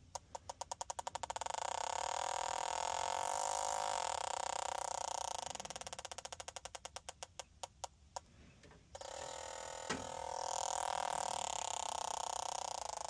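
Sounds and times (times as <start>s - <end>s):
machine hum: 8.9s - 13.0s
rapid mechanical ticking: 8.9s - 13.0s.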